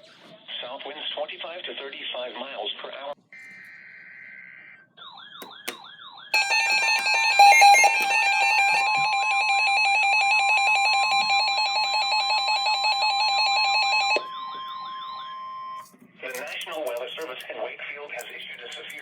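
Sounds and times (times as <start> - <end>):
rapid pulsing beep: 6.4 - 9.0
stepping data tones: 6.4 - 11.2
steady attention tone: 6.4 - 14.2
warbling electronic alarm: 6.4 - 15.9.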